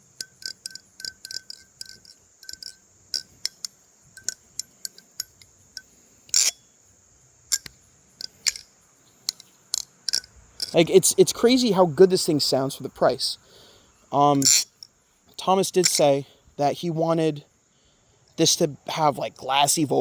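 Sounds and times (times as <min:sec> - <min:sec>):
butterfly knife metallic clacks: 0:00.0 - 0:06.6, 0:07.5 - 0:08.7, 0:09.3 - 0:10.9, 0:14.4 - 0:14.9, 0:15.8 - 0:16.1.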